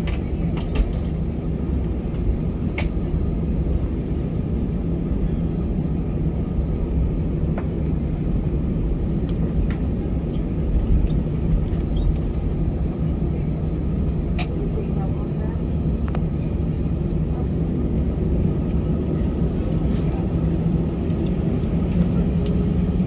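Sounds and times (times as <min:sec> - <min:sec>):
light clicks in cabin: 0:00.0 - 0:03.2, 0:06.8 - 0:07.9, 0:09.2 - 0:15.2, 0:16.0 - 0:16.4, 0:17.8 - 0:23.0
aircraft cabin engine rumble: 0:00.0 - 0:23.0.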